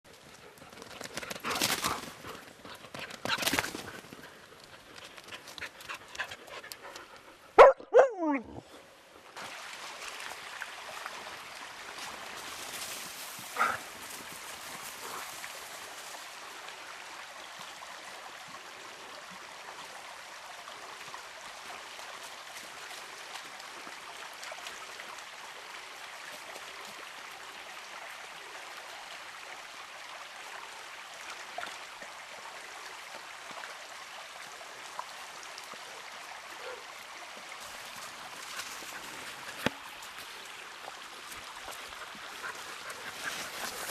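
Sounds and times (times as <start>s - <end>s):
dog panting: 0.5s - 7.8s, 13.6s - 13.8s, 41.7s - 43.9s
dog cry falling in pitch: 7.6s - 8.6s.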